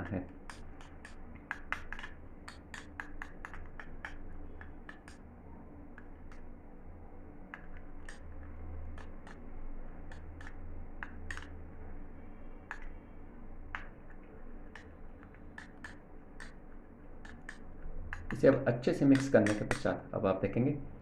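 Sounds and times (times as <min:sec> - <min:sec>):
low steady hum: 0:00.0 - 0:21.0
spoon clicking and scraping bowl: 0:00.4 - 0:05.2, 0:10.1 - 0:11.6, 0:17.2 - 0:18.4.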